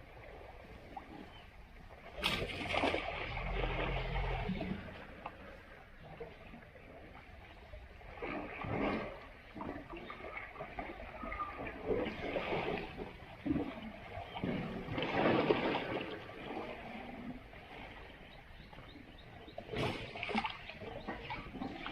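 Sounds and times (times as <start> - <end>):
muddy water splashing and sloshing: 0.0 - 21.9.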